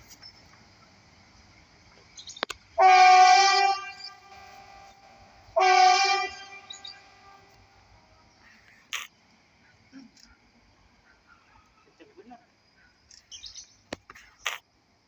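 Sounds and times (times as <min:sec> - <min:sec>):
shrill train horn blasts: 0:02.8 - 0:07.6.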